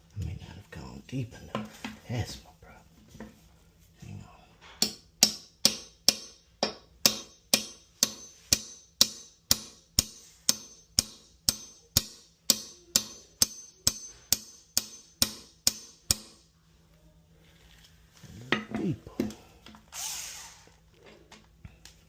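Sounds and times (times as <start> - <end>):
hammer striking metal awl: 4.8 - 16.5.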